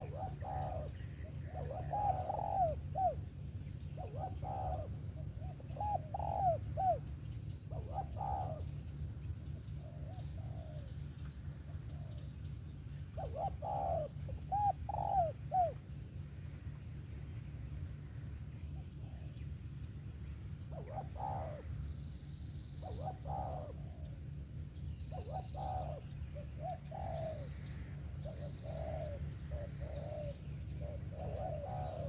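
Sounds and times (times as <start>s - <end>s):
dove cooing: 0.0s - 11.0s, 11.6s - 16.1s, 18.7s - 19.4s, 20.7s - 21.8s, 22.7s - 24.4s, 25.1s - 32.0s
steady low hum: 0.0s - 32.0s.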